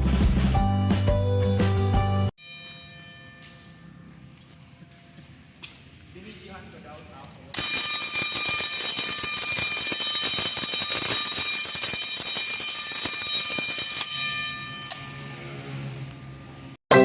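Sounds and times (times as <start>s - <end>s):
electric fire alarm bell ringing: 2.4s - 5.9s, 7.5s - 15.7s.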